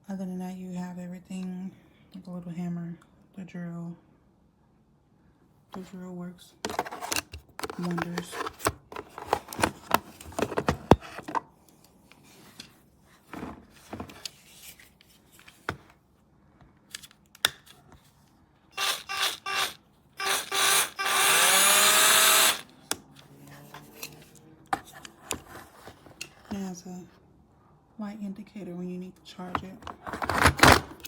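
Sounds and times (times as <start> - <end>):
cordless drill motor whirring: 18.8 - 22.9
drill handling clicks: 18.8 - 23.1.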